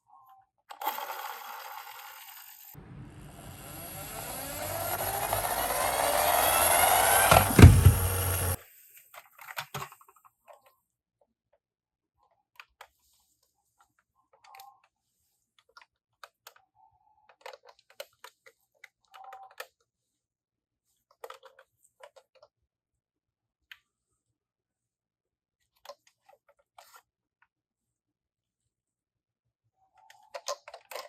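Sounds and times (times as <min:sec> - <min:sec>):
toy cars clicking and clattering: 0:03.4 - 0:08.6.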